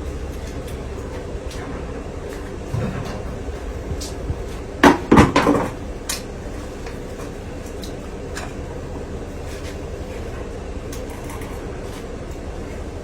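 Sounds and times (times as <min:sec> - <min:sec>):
low mechanical hum: 0:00.0 - 0:13.0
loud knocks and clatters: 0:01.7 - 0:06.2.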